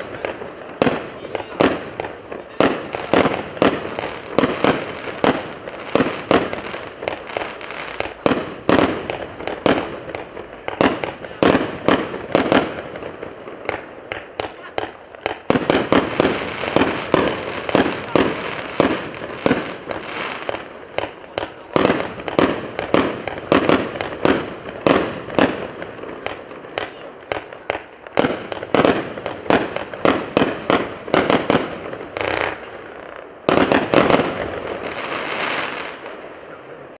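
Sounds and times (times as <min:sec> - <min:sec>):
fireworks cake firing: 0:00.0 - 0:36.9.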